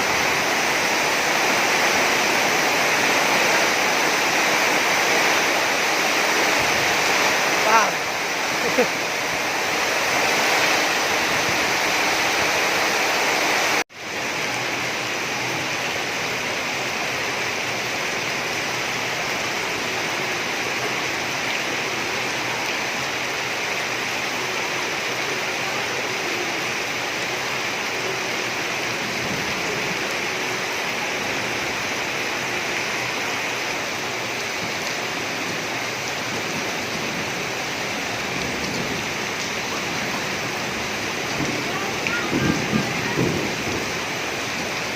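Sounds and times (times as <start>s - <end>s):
heavy rain pouring: 0.0s - 44.9s.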